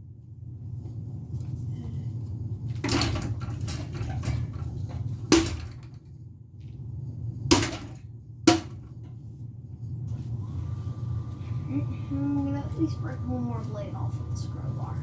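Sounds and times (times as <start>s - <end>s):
steady low hum: 0.0s - 15.0s
crowbar smashing a ceiling fan: 2.8s - 6.0s, 7.5s - 8.9s
rattle of small knocks: 2.8s - 6.1s, 7.5s - 9.1s.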